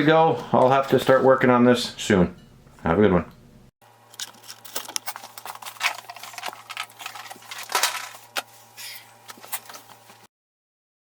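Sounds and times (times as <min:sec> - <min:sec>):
low electrical hum: 0:00.0 - 0:10.3.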